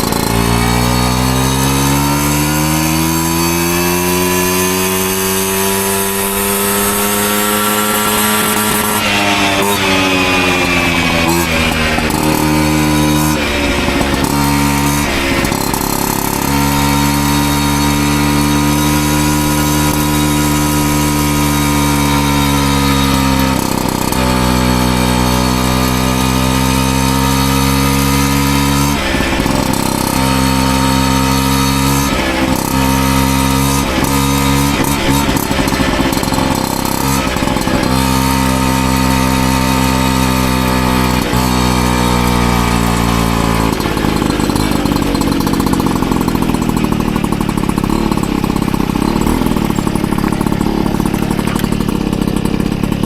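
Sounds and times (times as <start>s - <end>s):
moped engine revving high: 0.0s - 53.0s.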